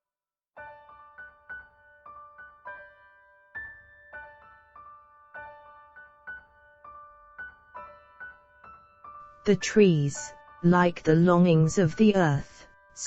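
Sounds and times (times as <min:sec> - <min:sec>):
gentle solo piano music: 0:00.6 - 0:11.0.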